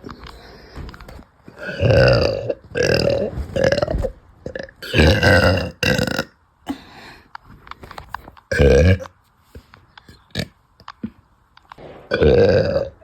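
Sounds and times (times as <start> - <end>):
woman burping loudly: 1.6 - 6.8, 12.1 - 13.0.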